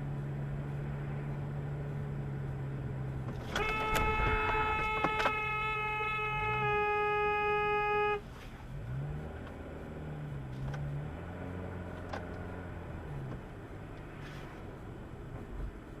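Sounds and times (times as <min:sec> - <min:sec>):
car engine revving: 0:00.0 - 0:16.0
car horn: 0:03.4 - 0:08.4.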